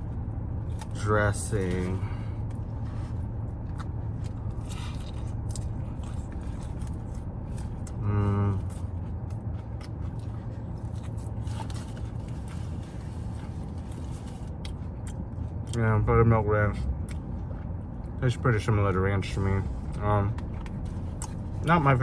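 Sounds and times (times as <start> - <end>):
chewing crunchy salad: 0.0 - 16.0, 16.8 - 18.4, 19.2 - 22.0
steady low hum: 0.0 - 22.0
person humming mmm: 8.0 - 8.6.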